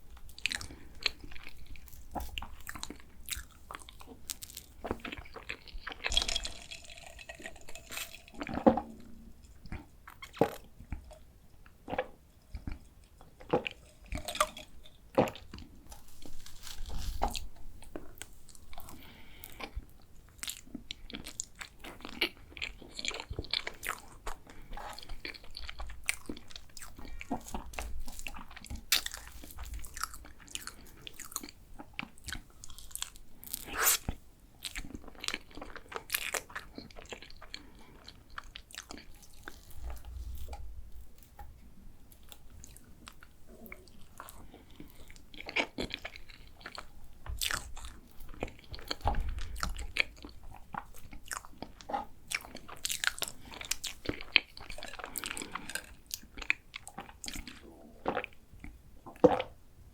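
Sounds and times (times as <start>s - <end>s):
close mouth eating sounds: 0.1s - 59.6s
crunching and chewing: 0.1s - 59.6s.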